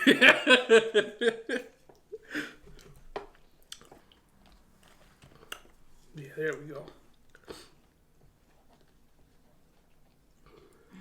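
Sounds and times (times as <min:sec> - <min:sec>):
person chewing food: 0:01.6 - 0:06.0, 0:06.8 - 0:11.0.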